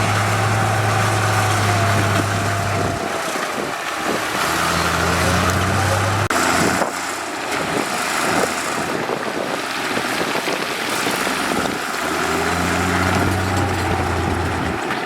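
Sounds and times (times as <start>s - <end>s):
low engine drone: 0.0s - 9.4s
heavy diesel machinery running: 0.0s - 15.0s.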